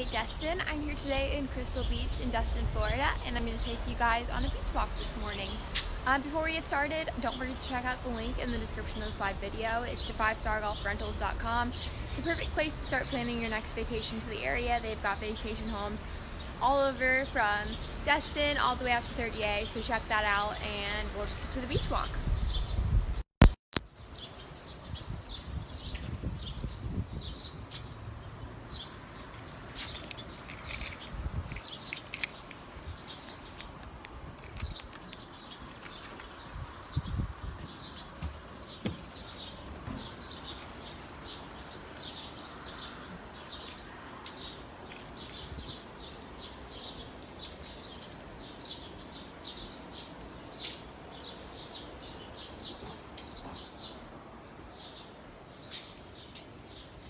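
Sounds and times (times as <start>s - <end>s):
birds chirping: 23.9s - 57.0s.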